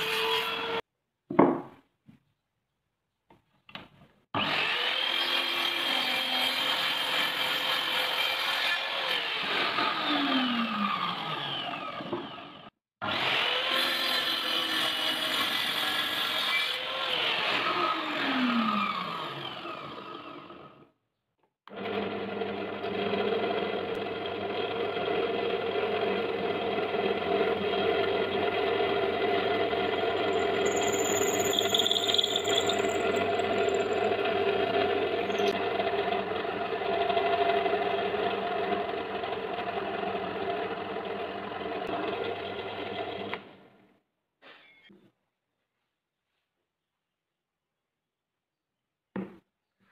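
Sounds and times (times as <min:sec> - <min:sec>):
power tool motor spinning down: 0:17.6 - 0:20.8, 0:21.7 - 0:40.6.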